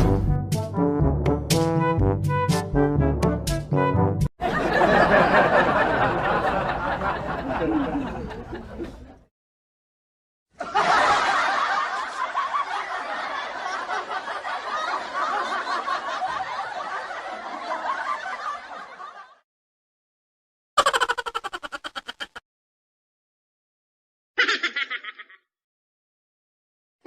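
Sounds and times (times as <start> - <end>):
laughter sound effect: 4.4 - 9.2, 10.6 - 19.4, 20.8 - 22.4, 24.4 - 25.5
audience laugh track: 4.4 - 9.3, 10.6 - 19.4, 24.4 - 25.4.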